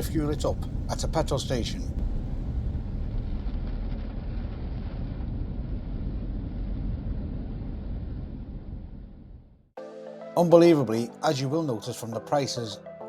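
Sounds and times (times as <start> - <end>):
rain: 0.0 - 6.0.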